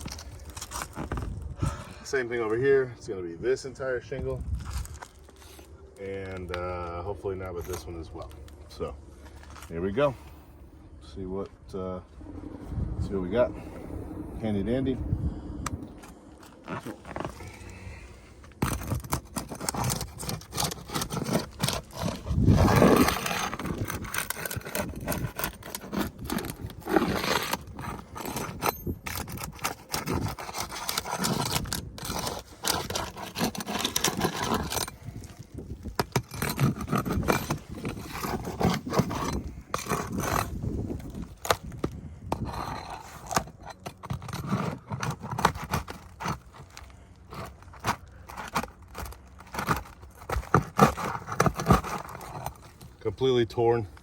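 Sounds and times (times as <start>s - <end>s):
metal pry tool scraping shingles: 18.5s - 53.8s.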